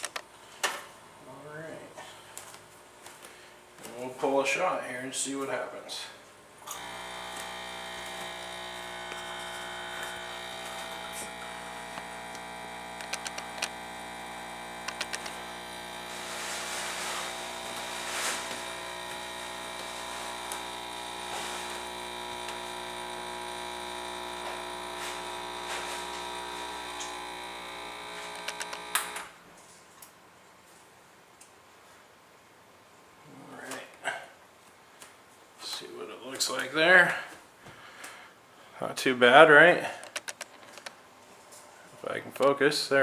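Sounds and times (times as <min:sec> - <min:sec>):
espresso machine pump humming: 0:06.7 - 0:29.4
light clicks: 0:11.9 - 0:13.8, 0:14.8 - 0:15.4.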